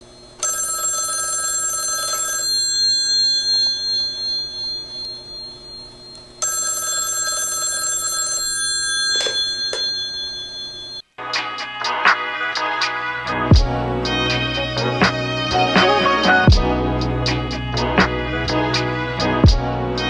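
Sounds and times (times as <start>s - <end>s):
telephone ringing: 0.4s - 11.1s.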